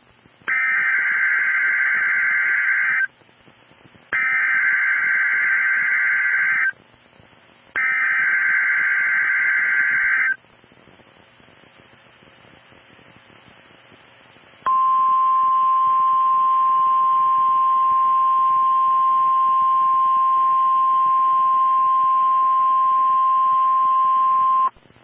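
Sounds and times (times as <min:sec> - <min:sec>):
faint radio static hiss: 0:00.0 - 0:25.0
loud steady warning alarm tone: 0:00.5 - 0:03.1, 0:04.2 - 0:06.7, 0:07.8 - 0:10.4.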